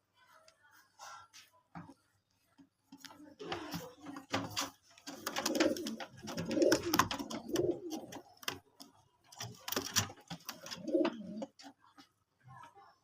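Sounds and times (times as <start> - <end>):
pigeons cooing: 3.5 - 11.7.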